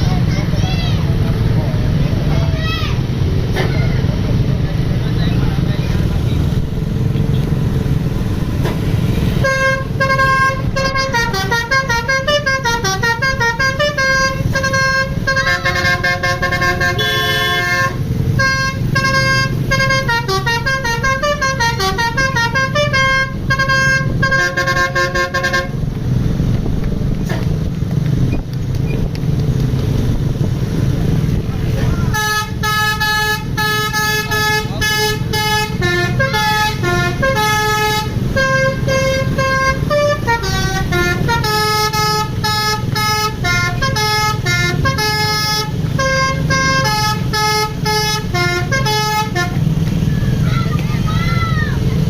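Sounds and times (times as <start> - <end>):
engine rumble: 0.0 - 52.0
musical bus horn tune: 9.4 - 25.8, 32.1 - 49.7.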